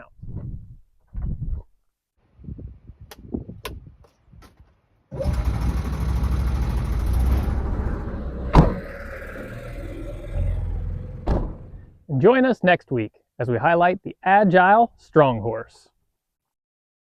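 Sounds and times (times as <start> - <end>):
small gasoline engine running: 5.1 - 7.7.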